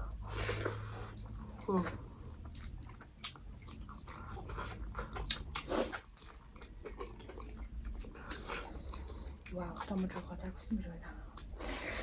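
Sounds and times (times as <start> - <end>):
person chewing food: 0.0 - 10.3.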